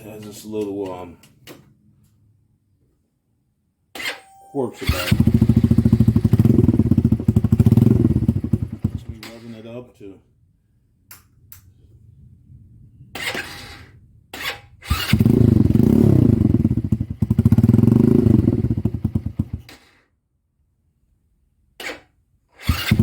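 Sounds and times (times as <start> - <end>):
motorcycle engine revving: 4.8 - 9.6, 14.4 - 20.0, 22.6 - 23.0.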